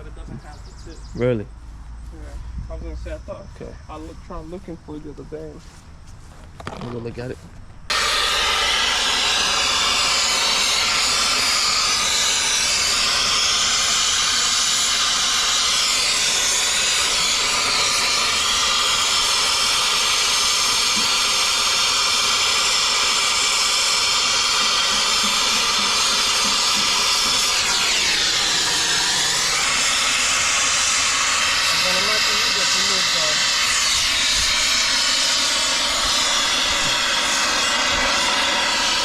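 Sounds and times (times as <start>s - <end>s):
gas hissing under pressure: 7.9s - 39.0s.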